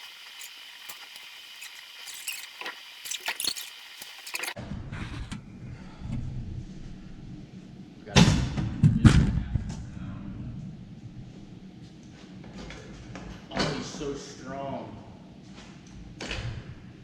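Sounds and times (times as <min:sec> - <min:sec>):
low steady rumble: 0:04.6 - 0:08.1, 0:08.8 - 0:12.0.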